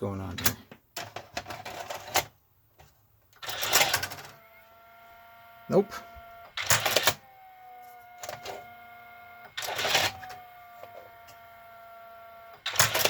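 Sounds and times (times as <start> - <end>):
motor whine: 3.8 - 13.0.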